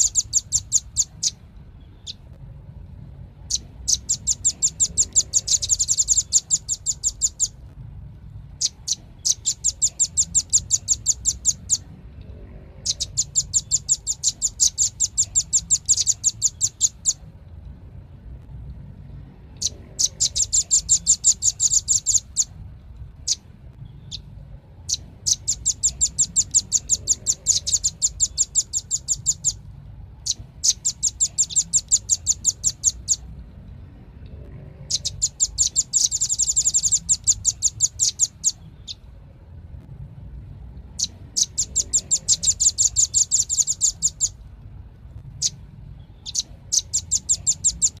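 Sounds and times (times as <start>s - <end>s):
bird calling in fast trills: 0.0s - 2.3s, 3.4s - 7.6s, 8.6s - 11.9s, 12.8s - 17.2s, 19.6s - 22.5s, 24.0s - 29.6s, 30.2s - 33.3s, 34.8s - 39.1s, 41.0s - 44.4s, 45.4s - 48.0s.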